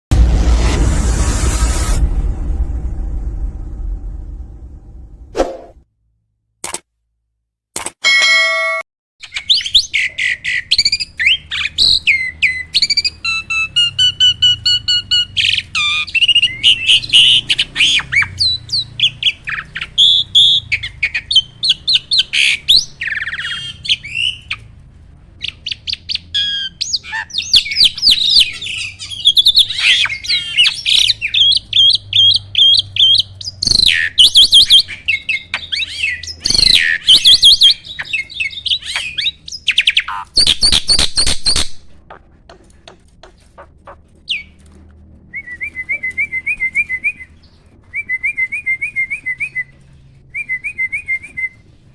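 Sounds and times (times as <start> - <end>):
starling singing: 9.2 - 24.7, 25.4 - 44.6.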